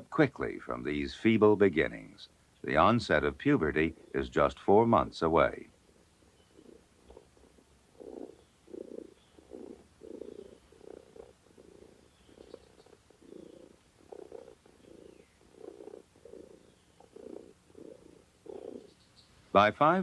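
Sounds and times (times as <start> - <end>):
cat purring: 5.4 - 19.0.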